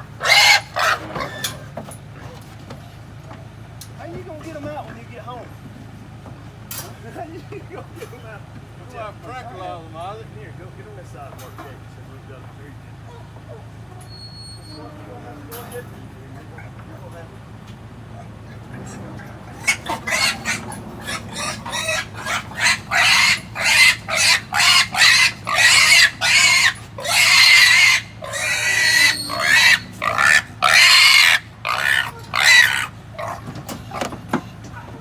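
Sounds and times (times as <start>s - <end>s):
pig squealing: 0.0s - 1.7s, 13.0s - 15.0s, 18.1s - 34.5s.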